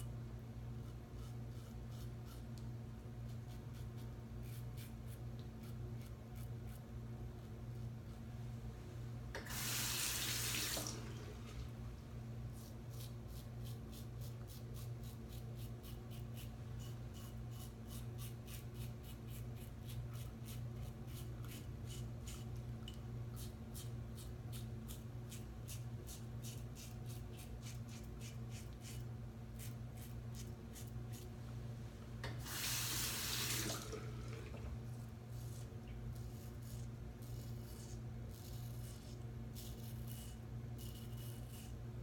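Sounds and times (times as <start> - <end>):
steady low hum: 0.0 - 10.1, 10.9 - 42.0
tap running: 9.3 - 11.7
razor scraping through stubble: 35.3 - 41.8.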